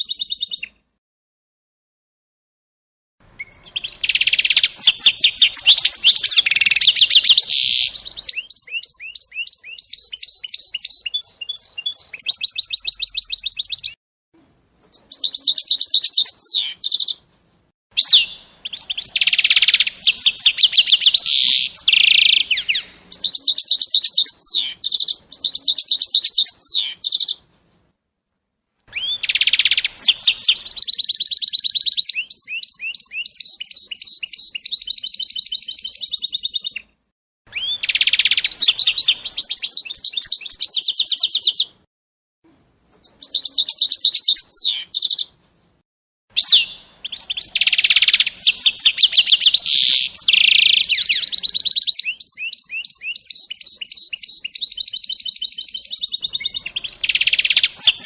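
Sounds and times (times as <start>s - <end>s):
songbird trilling and chirping: 0.0s - 0.8s, 3.4s - 14.0s, 14.8s - 17.2s, 18.0s - 27.4s, 28.9s - 36.9s, 37.5s - 41.8s, 42.9s - 45.3s, 46.4s - 58.0s.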